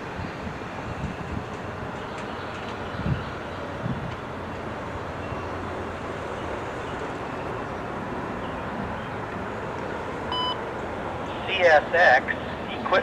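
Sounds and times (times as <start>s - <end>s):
train wheels rumbling on rail: 0.0s - 10.2s.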